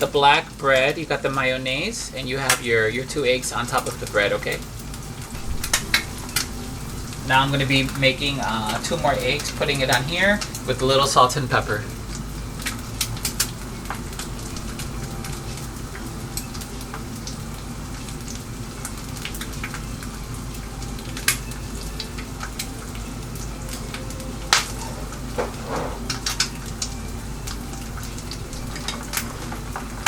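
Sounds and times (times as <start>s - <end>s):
eggs sizzling in a pan: 0.0s - 30.0s
crackling pops: 2.4s - 11.0s, 12.1s - 17.4s, 21.1s - 30.0s.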